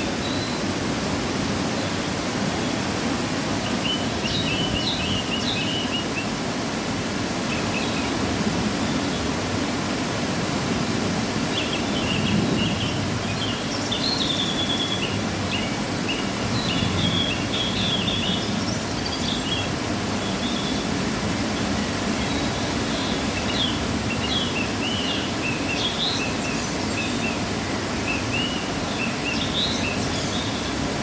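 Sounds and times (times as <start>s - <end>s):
waterfall rushing: 0.0s - 31.0s
small birds chirping: 11.5s - 30.8s.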